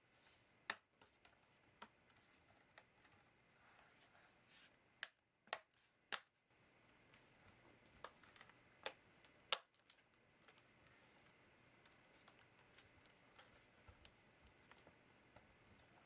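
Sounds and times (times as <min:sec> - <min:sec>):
laptop clicks and taps: 0:00.6 - 0:02.0, 0:08.0 - 0:10.0.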